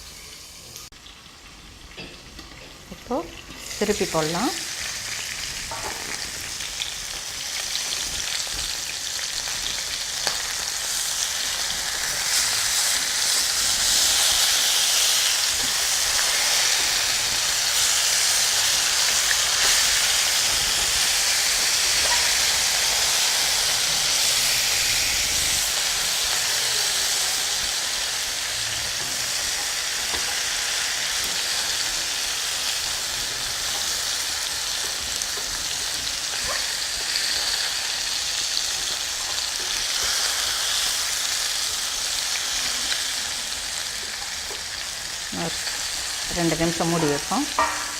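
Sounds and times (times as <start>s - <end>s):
chicken sizzling in oil: 0.0s - 47.9s.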